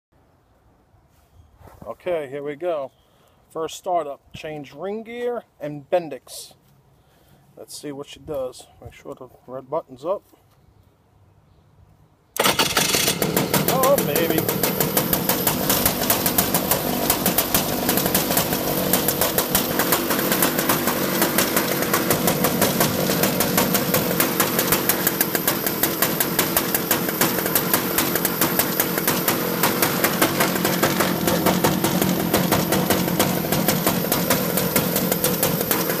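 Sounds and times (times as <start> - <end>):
kart engine idling: 12.4 - 36.0.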